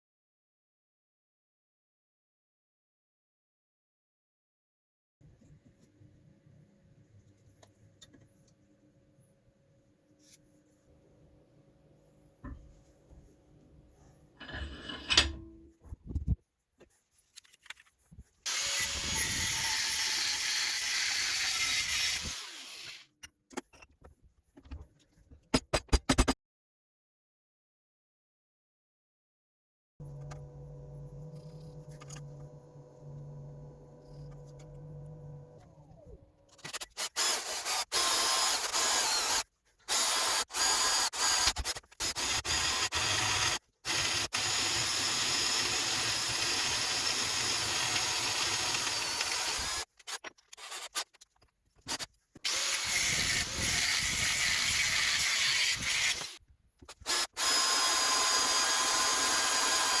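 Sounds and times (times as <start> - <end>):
grinder motor humming: 30.0 - 36.1.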